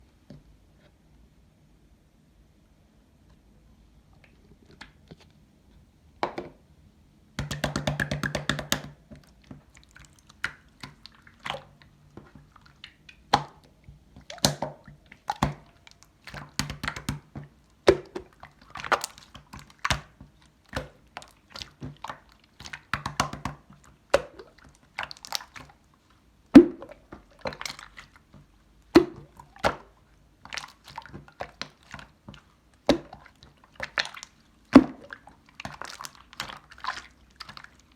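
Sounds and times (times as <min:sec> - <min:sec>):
slime squishing and popping: 0:07.4 - 0:25.8, 0:26.5 - 0:37.9.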